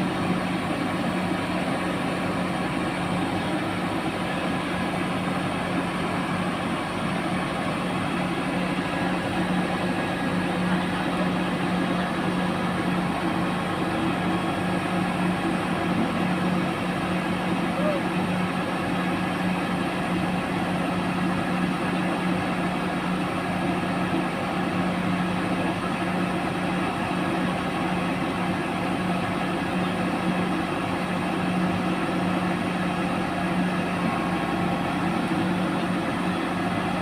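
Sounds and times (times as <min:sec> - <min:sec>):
diesel engine idling: 0:00.0 - 0:37.0.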